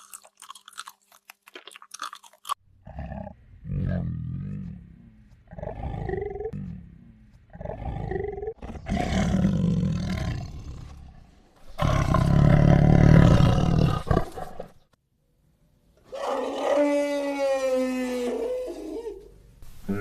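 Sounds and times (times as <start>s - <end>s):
animal roaring: 2.8s - 6.9s, 7.5s - 14.7s, 16.1s - 19.0s
animal long pitched call: 16.1s - 19.2s.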